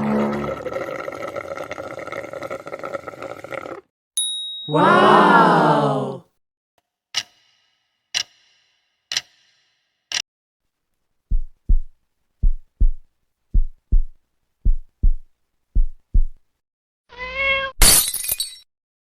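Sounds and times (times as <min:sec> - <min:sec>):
heartbeat thumps: 0:11.3 - 0:16.4
cat meowing: 0:17.1 - 0:17.8.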